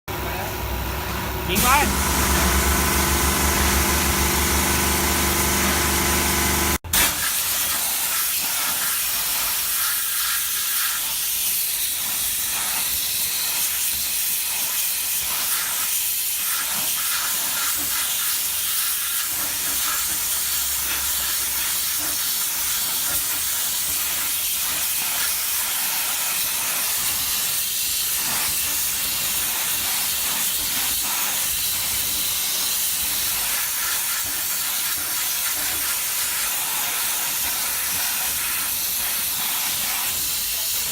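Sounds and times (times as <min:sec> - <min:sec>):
pressure washer pump drone: 0:00.1 - 0:08.1, 0:17.3 - 0:25.0
high-pressure jet hissing: 0:01.5 - 0:40.9.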